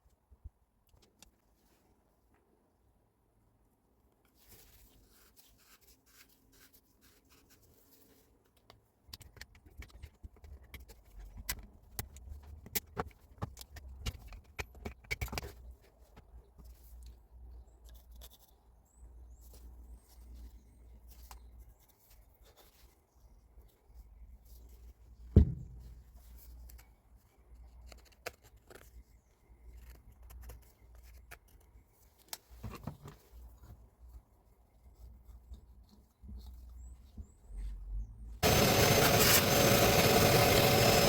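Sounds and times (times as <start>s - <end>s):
heavy knock: 25.4s - 26.0s.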